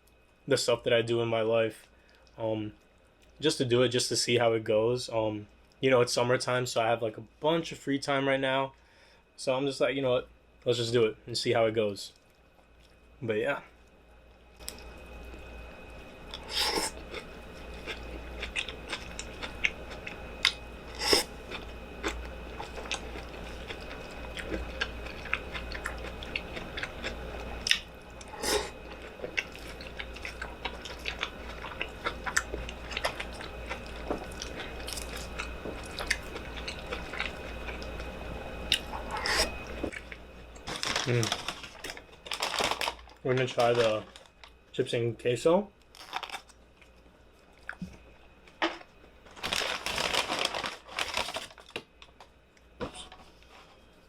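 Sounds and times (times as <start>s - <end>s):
low steady hum: 0.0s - 54.0s
chewing and crunching food: 12.1s - 13.1s, 16.3s - 44.6s, 45.9s - 48.1s.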